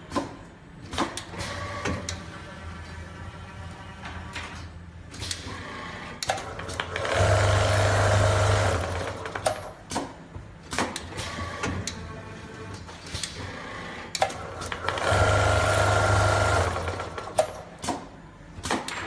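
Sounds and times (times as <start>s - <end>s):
sewing machine stitching: 6.8s - 9.4s, 14.7s - 17.4s
machine clicks and knocks: 8.9s - 12.0s, 16.6s - 19.0s.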